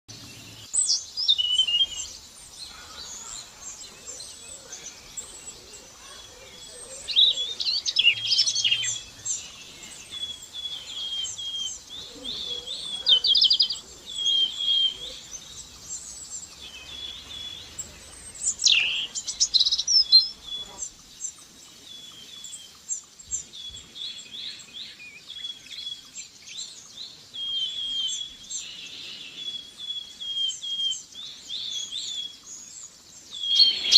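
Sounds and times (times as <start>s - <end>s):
songbirds chirping and trilling: 0.1s - 33.9s.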